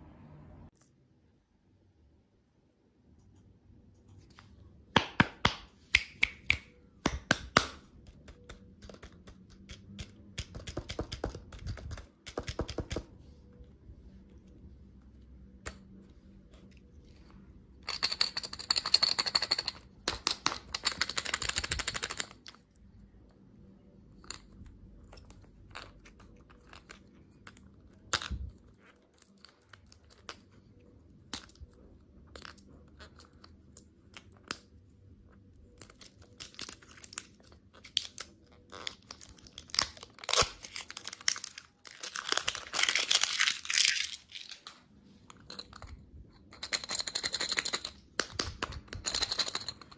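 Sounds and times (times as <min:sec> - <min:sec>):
candy packaging crinkling: 0:35.6 - 0:46.0.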